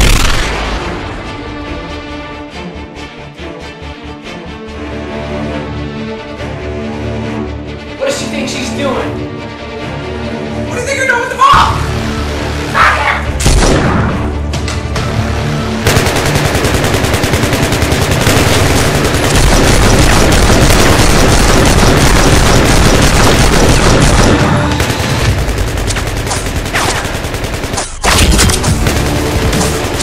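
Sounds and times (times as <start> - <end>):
background music: 0.0 - 30.0
rapid machine-gun fire: 15.8 - 30.0.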